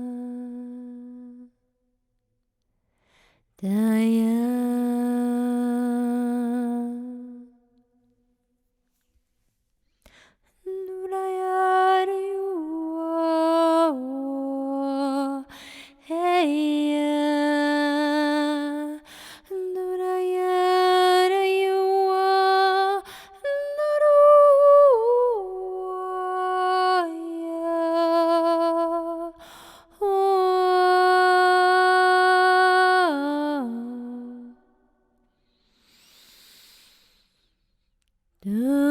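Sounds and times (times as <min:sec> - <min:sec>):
woman singing long held notes: 0:00.0 - 0:01.5, 0:10.6 - 0:29.4.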